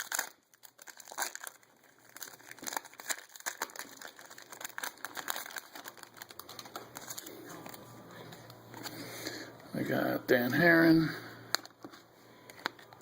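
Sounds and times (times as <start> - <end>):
foil wrapper crinkling: 0.0 - 9.0.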